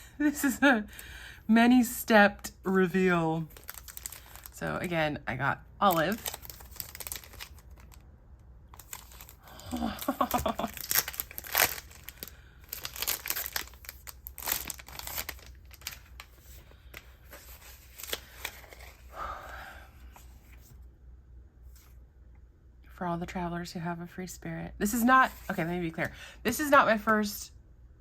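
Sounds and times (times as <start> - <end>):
packaging crinkling and tearing: 3.4 - 4.6, 5.8 - 8.0, 8.8 - 19.1.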